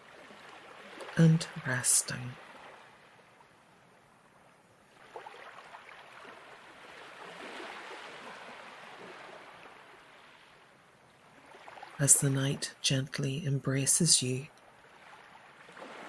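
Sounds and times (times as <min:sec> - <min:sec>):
ocean surf wave: 0:05.0 - 0:12.7.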